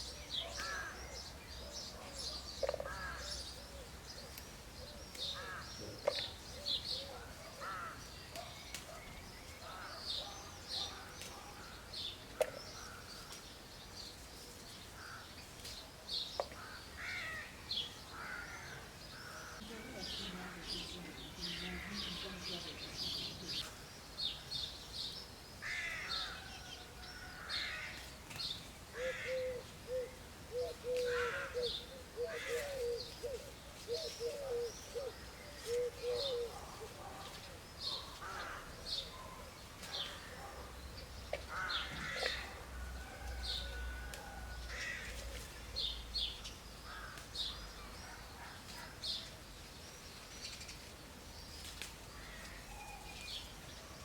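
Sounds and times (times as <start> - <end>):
birds chirping: 0.0 - 42.6.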